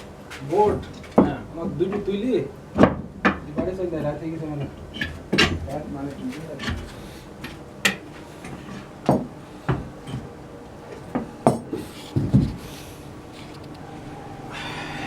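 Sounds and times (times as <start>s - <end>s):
hard objects knocking and clattering: 11.0s - 12.7s.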